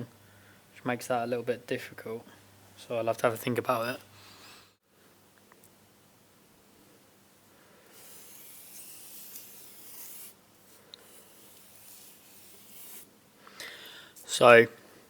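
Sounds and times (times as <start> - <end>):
faint rubbing and scratching: 7.9 - 13.1.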